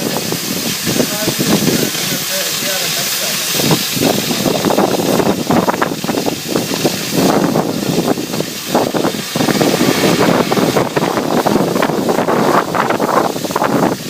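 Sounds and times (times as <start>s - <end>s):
cutting torch hissing: 0.0s - 14.0s.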